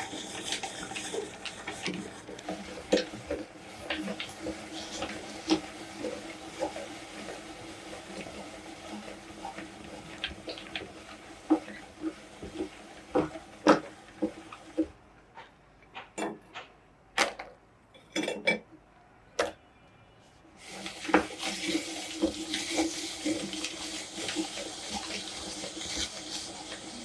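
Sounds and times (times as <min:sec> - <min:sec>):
meat grinder crushing biscuits: 0:00.0 - 0:14.9, 0:20.6 - 0:27.0.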